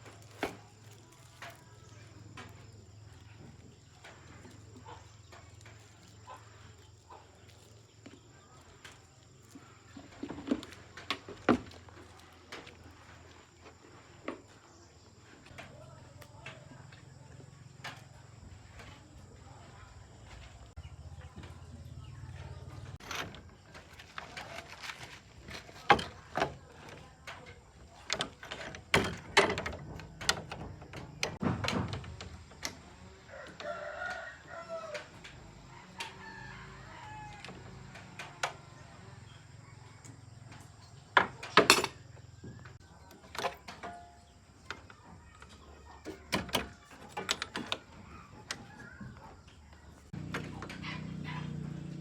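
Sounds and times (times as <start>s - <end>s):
rooster crowing: 33.2s - 37.7s.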